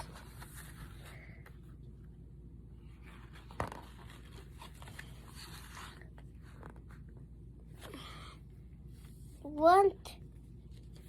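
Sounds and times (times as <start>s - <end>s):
paper pages rustling: 0.0s - 1.6s, 2.8s - 7.1s.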